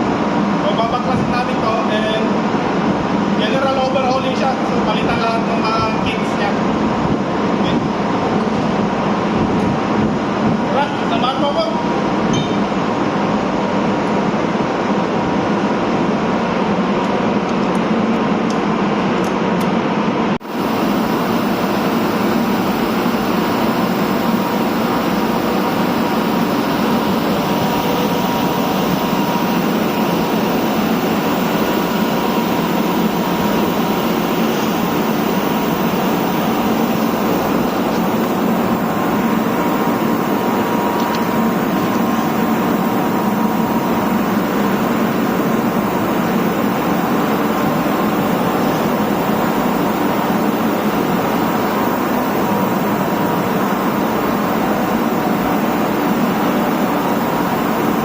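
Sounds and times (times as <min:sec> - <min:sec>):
diesel generator roaring: 0:00.0 - 0:58.0
faint steady whine: 0:20.2 - 0:58.0.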